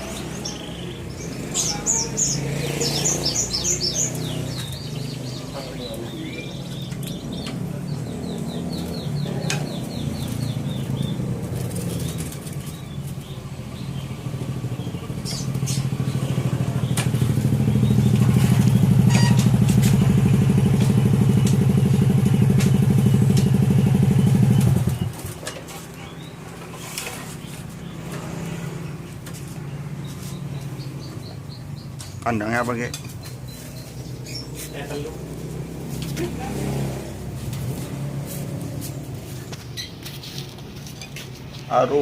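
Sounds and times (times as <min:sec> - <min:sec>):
bird chirping: 0:00.0 - 0:38.2
motorcycle engine running: 0:00.0 - 0:41.0.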